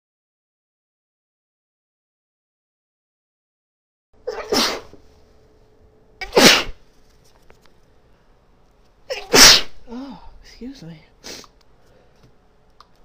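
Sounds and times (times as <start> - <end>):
woman sneezing: 4.2 - 5.0, 6.2 - 6.8, 9.1 - 10.2.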